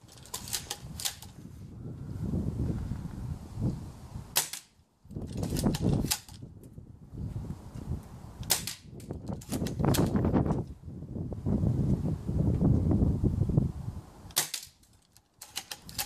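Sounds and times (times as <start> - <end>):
airsoft rifle clacks: 0.1 - 1.3, 4.4 - 6.4, 14.3 - 16.0
rifle bolt clicks: 14.3 - 16.0.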